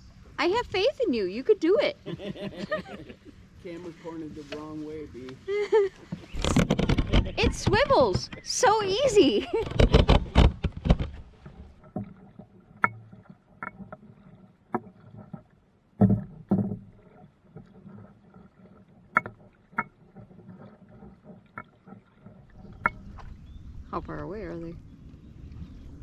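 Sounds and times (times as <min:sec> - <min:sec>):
paddle knocking on canoe hull: 0:09.8 - 0:23.3.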